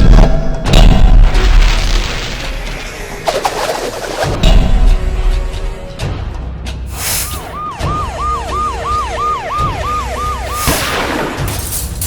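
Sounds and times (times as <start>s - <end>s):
whooshing sound effects: 3.2s - 4.4s
siren yelping: 7.3s - 10.8s.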